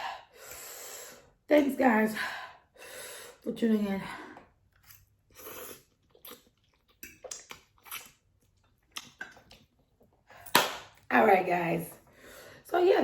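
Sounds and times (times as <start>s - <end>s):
person chewing noodles: 4.6s - 10.1s.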